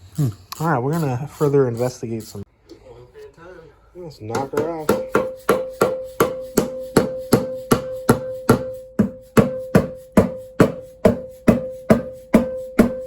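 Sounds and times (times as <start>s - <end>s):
hammer blows on metal: 4.3s - 13.0s.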